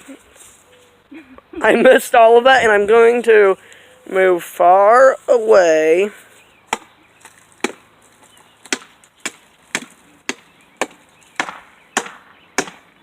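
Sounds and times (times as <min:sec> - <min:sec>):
chopping dry wood: 0:06.7 - 0:06.9, 0:07.6 - 0:07.8, 0:08.6 - 0:12.9.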